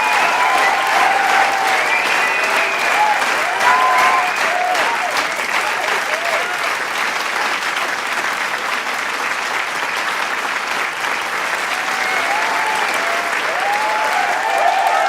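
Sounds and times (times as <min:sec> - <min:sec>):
crowd cheering and whooping: 0:00.0 - 0:06.7, 0:11.6 - 0:15.0
crowd applauding: 0:00.0 - 0:15.0.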